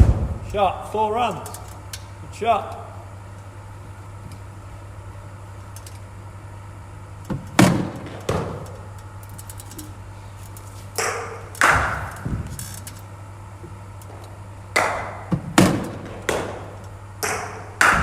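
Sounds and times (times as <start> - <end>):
cricket ball knocks with ringing: 11.0 - 12.1, 14.8 - 16.6, 17.2 - 18.0.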